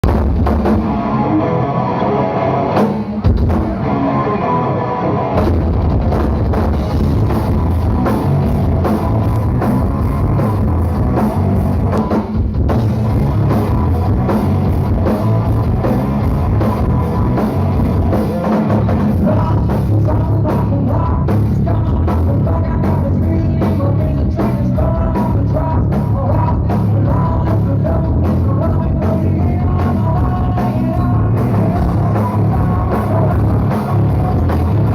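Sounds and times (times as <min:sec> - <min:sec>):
rock band playing: 0:00.0 - 0:34.9
drum beat: 0:05.4 - 0:20.2.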